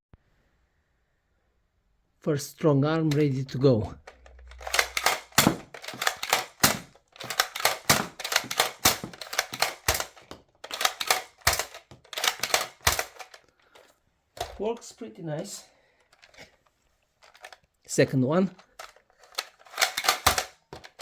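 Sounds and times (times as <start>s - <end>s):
toy blaster plastic clacks: 4.0s - 13.6s, 17.2s - 17.6s, 18.6s - 21.0s.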